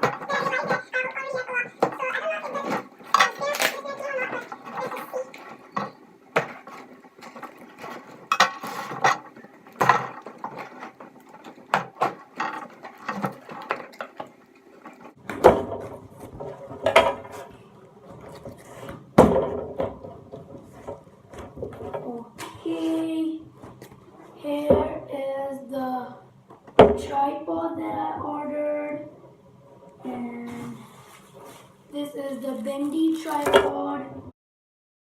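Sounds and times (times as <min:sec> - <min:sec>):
knocks clicks and scrapes: 0:00.0 - 0:22.2.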